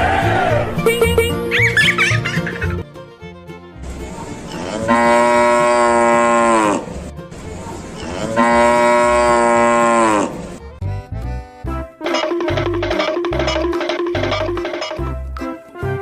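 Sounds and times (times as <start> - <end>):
cow mooing: 4.5 - 6.9, 8.0 - 10.4.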